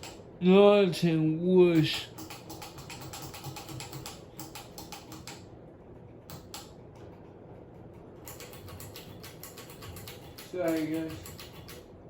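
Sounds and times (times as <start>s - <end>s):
ceiling fan clicking: 0.0s - 12.0s
ceiling fan humming: 0.0s - 12.0s.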